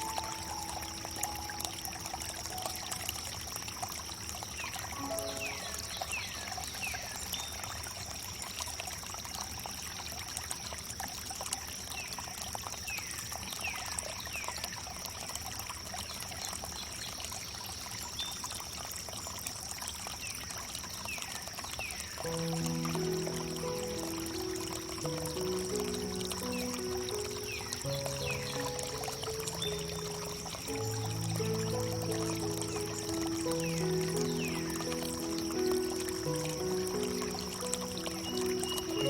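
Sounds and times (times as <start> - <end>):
small birds chirping: 0.0 - 3.3, 4.4 - 7.6, 21.9 - 39.0
water trickling over wood: 0.0 - 39.0.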